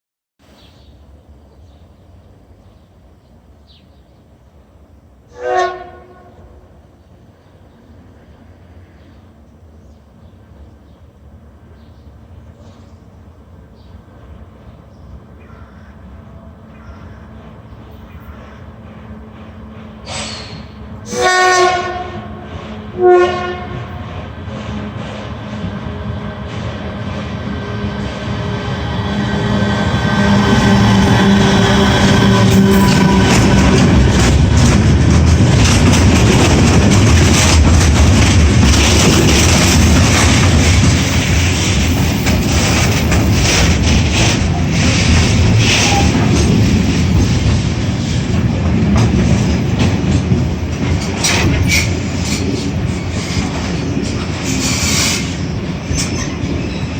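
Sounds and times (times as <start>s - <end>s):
train rumble and hum: 0.9s - 56.9s
locomotive horn blasts: 5.3s - 6.5s, 21.0s - 24.0s, 27.6s - 34.2s
wheels clacking over rail joints: 16.7s - 56.9s.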